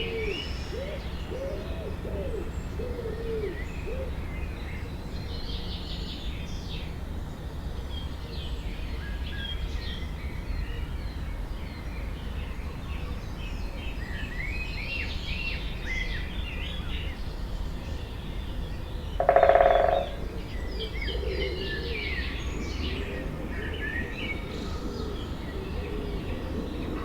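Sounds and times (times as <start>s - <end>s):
songbirds singing: 0.0s - 27.0s
lower bird call: 19.2s - 22.3s.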